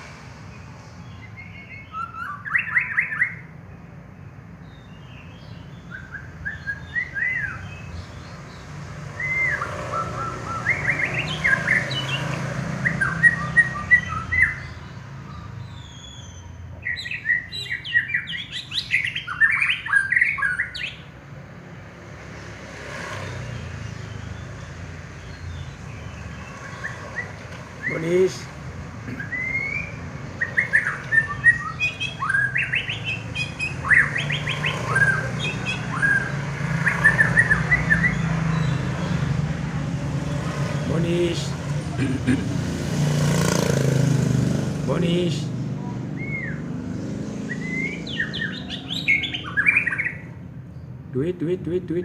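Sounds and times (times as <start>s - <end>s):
bird singing whistled phrases: 1.2s - 3.5s, 4.8s - 7.9s, 9.2s - 12.2s, 12.8s - 21.0s, 29.2s - 38.3s, 46.2s - 46.7s, 47.4s - 50.3s.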